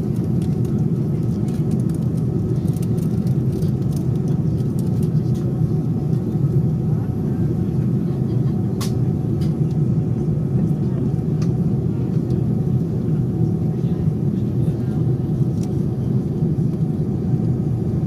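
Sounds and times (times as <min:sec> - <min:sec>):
airplane cabin noise: 0:00.0 - 0:18.0.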